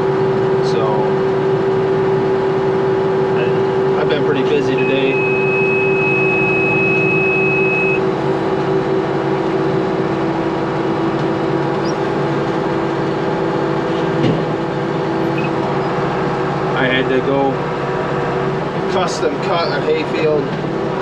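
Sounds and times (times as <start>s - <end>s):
baler mechanism running: 0.0s - 21.0s
tractor engine running: 0.0s - 21.0s
high steady tone: 4.6s - 8.1s, 15.1s - 16.2s.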